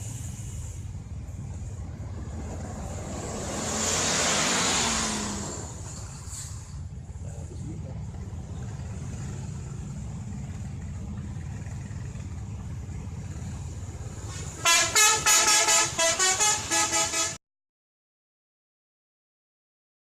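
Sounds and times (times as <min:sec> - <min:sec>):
diesel bus engine rumbling: 0:00.0 - 0:17.4
multi-tone horn playing a tune: 0:14.6 - 0:17.4.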